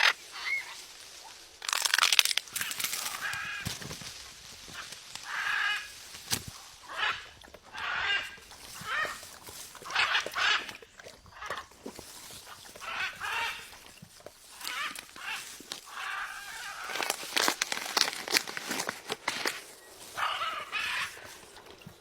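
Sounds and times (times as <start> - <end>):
sharp clicks: 1.6 - 3.2.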